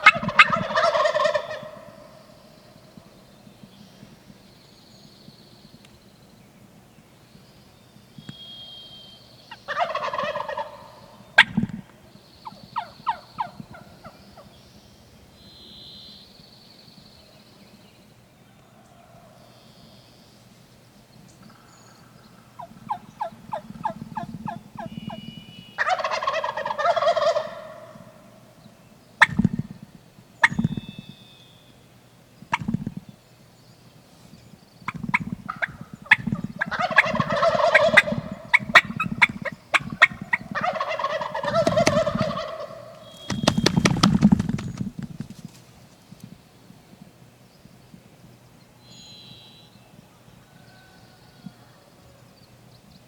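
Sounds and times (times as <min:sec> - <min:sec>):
turkey yelps: 0:00.0 - 0:02.0, 0:09.7 - 0:11.6, 0:12.8 - 0:14.2, 0:22.6 - 0:25.2, 0:25.8 - 0:28.0, 0:30.4 - 0:30.6, 0:34.9 - 0:44.6
turkey gobbling: 0:00.0 - 0:02.1, 0:09.7 - 0:11.6, 0:22.6 - 0:25.2, 0:25.8 - 0:28.2, 0:30.4 - 0:30.7, 0:32.5 - 0:32.9, 0:34.9 - 0:45.0.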